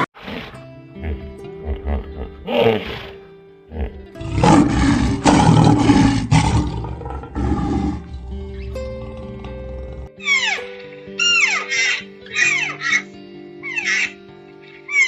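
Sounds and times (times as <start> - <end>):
background music with steady tones: 0.3 - 15.0
tiger roaring: 2.5 - 10.2.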